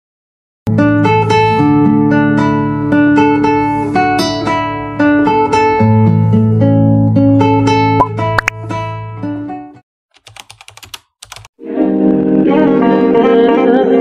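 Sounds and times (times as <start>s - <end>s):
picked guitar music: 0.7s - 9.8s.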